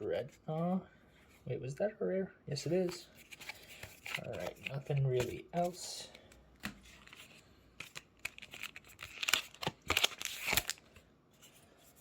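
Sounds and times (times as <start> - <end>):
foil wrapper crinkling and tearing: 7.8 - 11.0.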